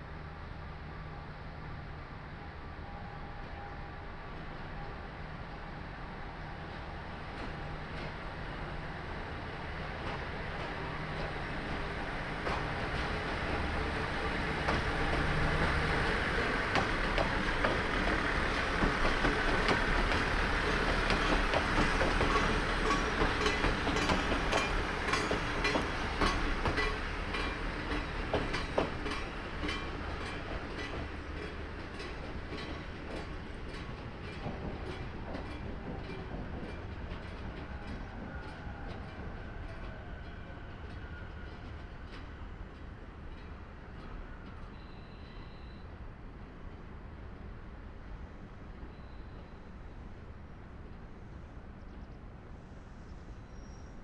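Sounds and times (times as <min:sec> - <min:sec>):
train rumble: 0:00.0 - 0:54.0
train wheels clacking over rail joints: 0:07.3 - 0:45.2.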